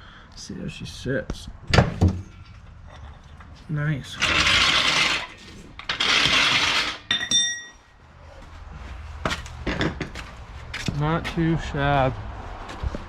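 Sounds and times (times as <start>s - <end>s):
floor jack scraping: 4.0s - 7.2s
metallic clink: 7.0s - 8.0s.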